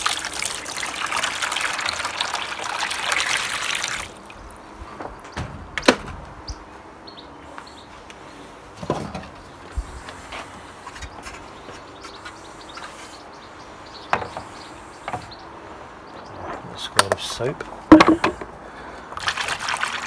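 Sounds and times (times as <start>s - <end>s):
water running from a tap: 0.0s - 4.2s.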